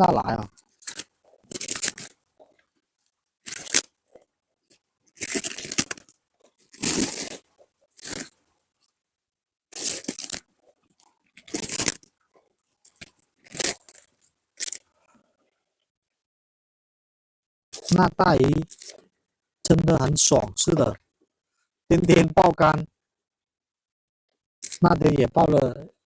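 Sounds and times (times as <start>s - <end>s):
crunching tearing bursts: 0.5s - 2.7s, 3.4s - 8.5s, 9.7s - 12.2s, 12.8s - 14.9s, 17.8s - 18.0s, 18.6s - 19.1s, 24.6s - 24.9s.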